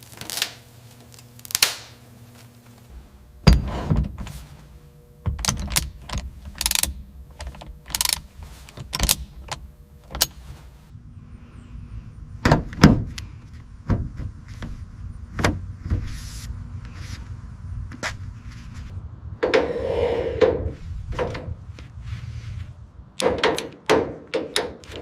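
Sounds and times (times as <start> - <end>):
low steady hum: 0.0 - 25.0
sharp knocks and clicks: 23.2 - 25.0.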